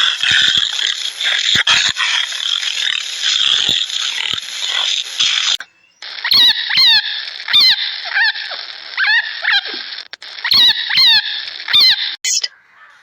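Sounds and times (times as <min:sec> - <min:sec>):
steady hiss: 0:00.0 - 0:06.2
animal squeaky calls: 0:00.0 - 0:13.0.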